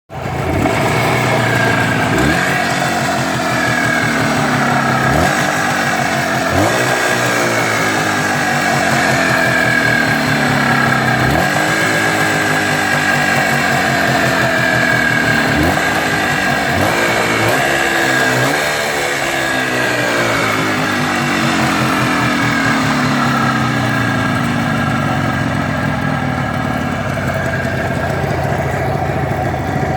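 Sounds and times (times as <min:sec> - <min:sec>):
engine idling and revving: 0:00.1 - 0:29.9.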